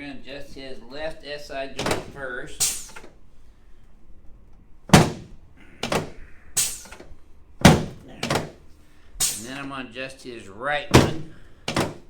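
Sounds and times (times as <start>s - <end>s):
chiropractic table thunking: 1.8s - 3.2s, 4.8s - 9.6s, 10.9s - 12.0s.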